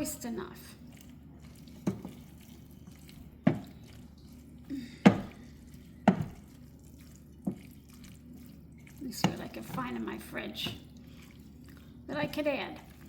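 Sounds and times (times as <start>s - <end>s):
faint steady hum: 0.0s - 13.0s
utensil knocking in a pan: 3.4s - 3.8s, 5.0s - 5.4s, 6.0s - 6.4s.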